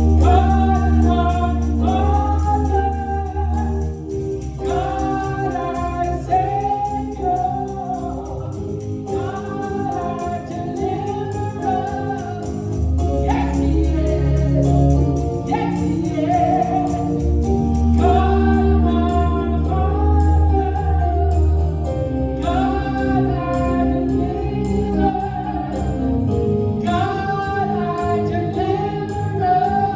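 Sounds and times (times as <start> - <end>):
band playing steady beat: 0.0 - 18.2
choir singing gospel: 0.0 - 29.9
tambourine: 0.0 - 29.9.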